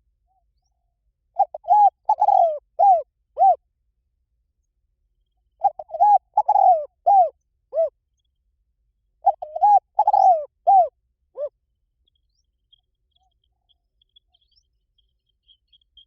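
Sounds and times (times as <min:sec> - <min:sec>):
dove cooing: 0:01.4 - 0:03.6, 0:05.6 - 0:08.0, 0:09.2 - 0:11.6.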